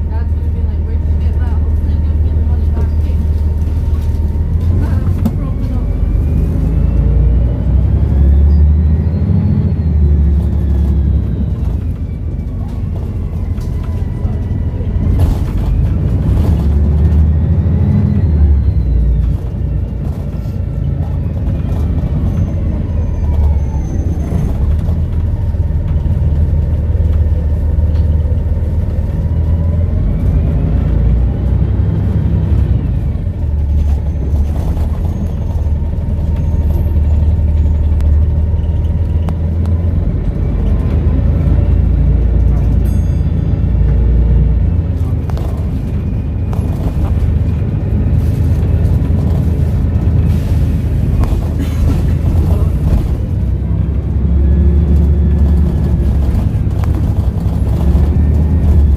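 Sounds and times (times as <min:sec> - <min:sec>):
bus diesel engine under load: 0:00.0 - 0:58.9
turbocharger whistling: 0:06.6 - 0:12.6, 0:17.4 - 0:20.0.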